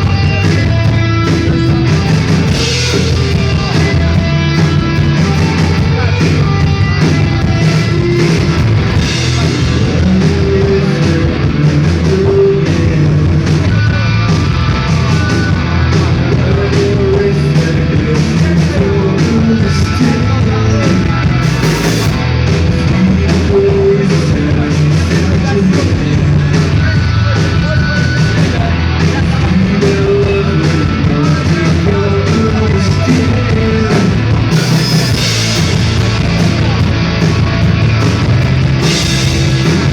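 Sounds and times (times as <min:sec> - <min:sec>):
drum kit hits: 0:00.0 - 0:10.8, 0:34.0 - 0:39.9
bass guitar: 0:00.0 - 0:39.9
electric guitar: 0:00.0 - 0:39.9.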